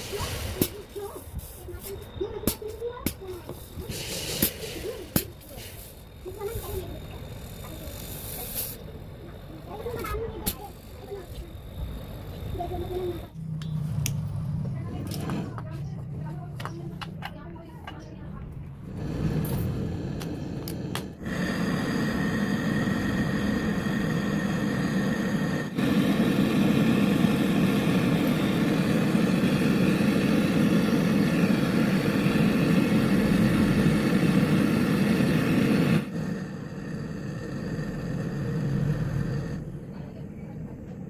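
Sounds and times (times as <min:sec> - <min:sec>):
machine running with hum: 0:04.8 - 0:16.5, 0:18.6 - 0:41.0.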